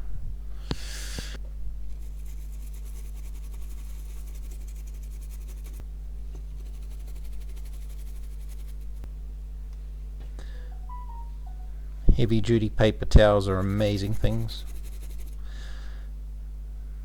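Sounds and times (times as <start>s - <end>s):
steady electrical hum: 0.0s - 17.0s
scrubbing circuit board: 13.2s - 15.4s.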